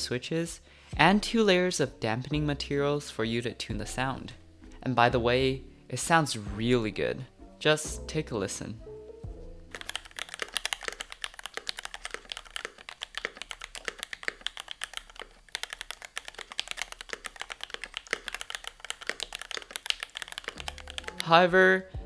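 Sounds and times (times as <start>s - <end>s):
fast mechanical keyboard typing: 9.7s - 21.4s.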